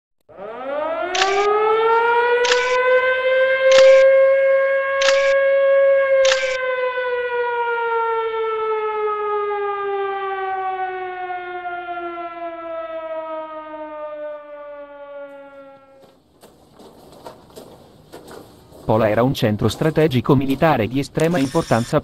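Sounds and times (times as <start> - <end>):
air raid siren winding down: 0.3 - 16.0
sharp click: 1.2 - 1.5, 2.5 - 2.8, 3.7 - 4.0, 5.0 - 5.4, 6.3 - 6.6.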